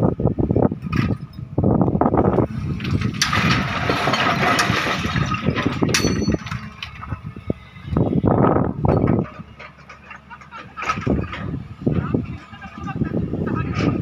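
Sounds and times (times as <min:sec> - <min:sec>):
diesel engine under load: 0:00.0 - 0:14.0
rock and soil clattering: 0:02.5 - 0:07.2.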